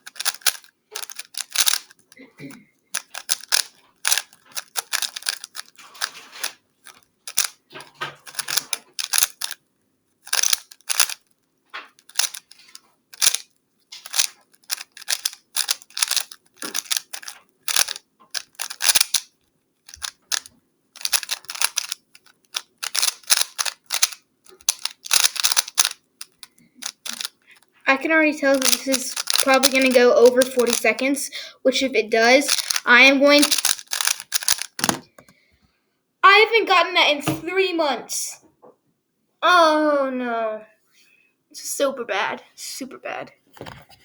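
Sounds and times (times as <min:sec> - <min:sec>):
puzzle cube clicking and clacking: 0:00.0 - 0:02.2, 0:02.9 - 0:09.6, 0:10.2 - 0:35.4.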